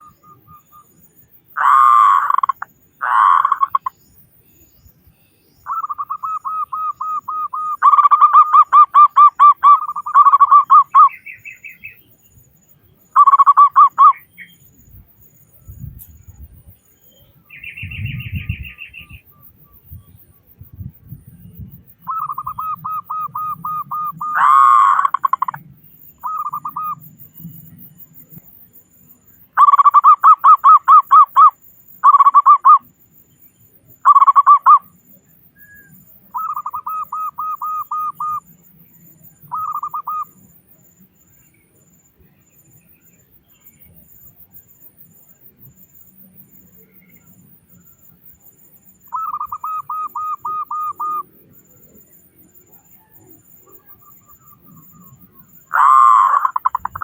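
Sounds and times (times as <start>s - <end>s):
doves cooing: 1.6s - 3.9s, 22.0s - 25.6s, 49.1s - 51.3s, 52.7s - 57.0s.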